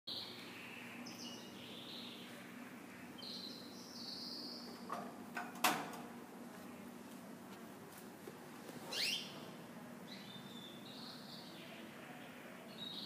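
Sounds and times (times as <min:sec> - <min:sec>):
faint steady hum: 0:00.1 - 0:13.0
canaries trilling: 0:08.9 - 0:09.4.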